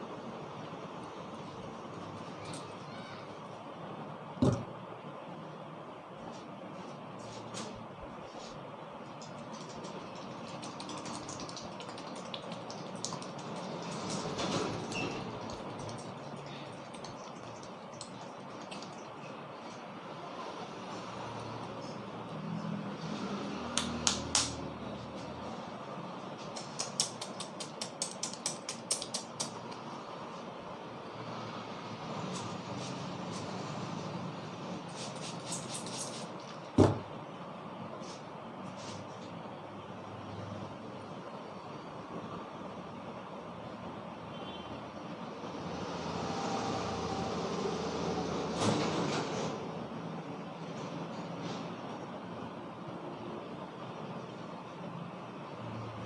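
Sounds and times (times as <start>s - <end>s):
vehicle passing: 20.2s - 25.7s
sharp snap: 23.8s - 24.6s, 26.6s - 29.8s.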